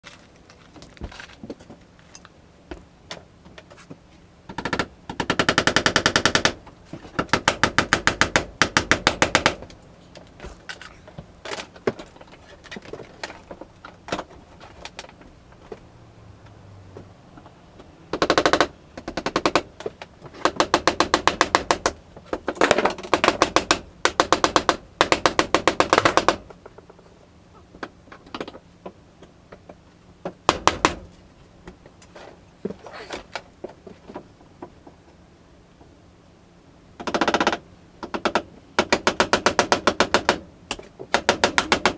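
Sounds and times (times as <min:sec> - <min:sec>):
impact driver rattling: 0:18.1 - 0:26.5.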